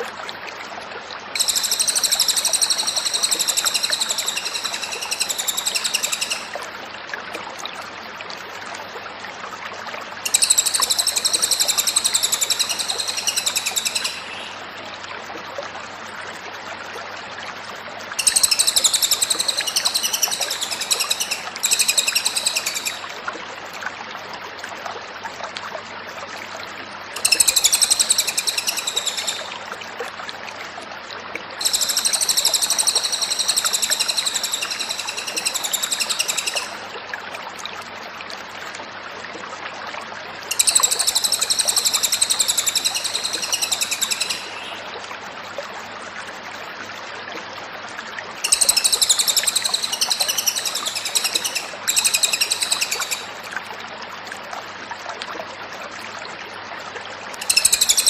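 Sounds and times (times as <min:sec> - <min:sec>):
songbird trilling: 0:01.4 - 0:06.5, 0:10.3 - 0:14.6, 0:18.2 - 0:23.1, 0:27.2 - 0:29.5, 0:31.6 - 0:36.8, 0:40.5 - 0:44.8, 0:48.4 - 0:53.3, 0:57.4 - 0:58.0.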